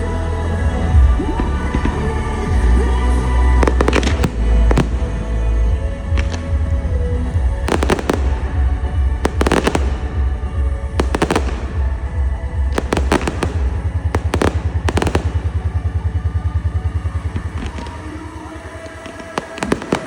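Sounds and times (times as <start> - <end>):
music with heavy bass beat: 0.0 - 18.3
fireworks bangs and crackles: 0.8 - 20.0.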